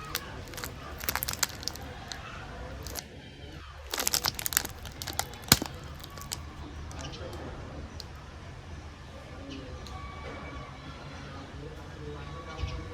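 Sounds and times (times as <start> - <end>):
plastic wrapper crinkling and tearing: 0.0 - 2.2, 2.8 - 3.0, 3.9 - 7.1.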